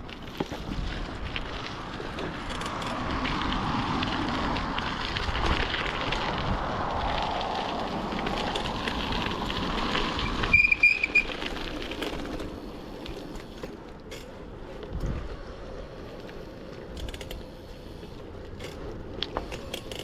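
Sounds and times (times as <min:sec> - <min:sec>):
bicycle clicks: 0:00.0 - 0:20.0
wind rushing on microphone: 0:00.6 - 0:11.2, 0:14.8 - 0:15.5
short high squeal: 0:10.5 - 0:11.3.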